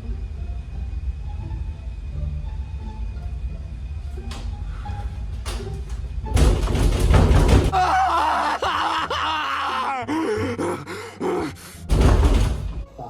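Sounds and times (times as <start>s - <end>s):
person moaning: 7.7s - 11.6s.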